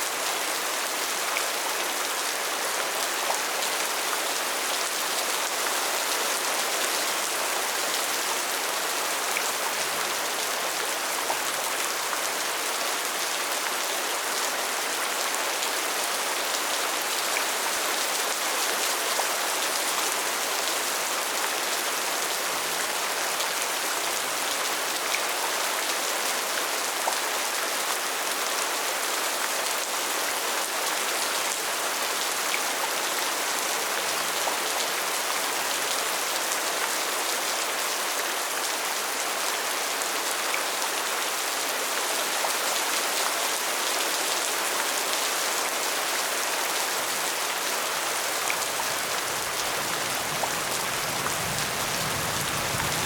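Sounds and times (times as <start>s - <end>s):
rain hissing: 48.6s - 53.0s.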